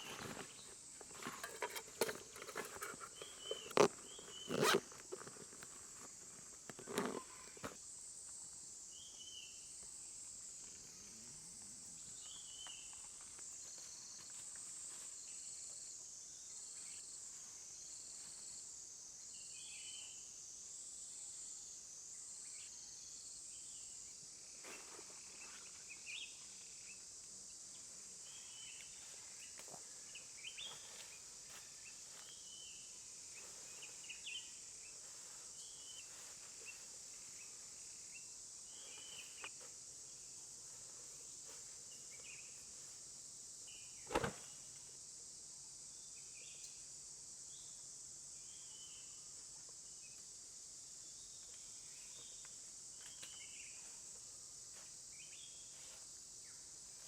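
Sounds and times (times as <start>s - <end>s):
bird chirps: 2.4s - 4.8s.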